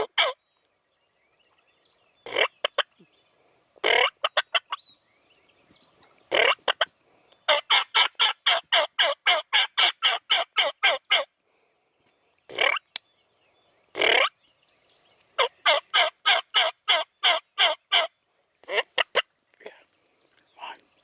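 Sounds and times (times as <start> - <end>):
wild turkey gobbling: 0.0 - 0.4, 2.3 - 3.0, 3.8 - 4.8, 6.3 - 6.9, 7.5 - 11.3, 12.5 - 12.9, 14.0 - 14.4, 15.4 - 19.3.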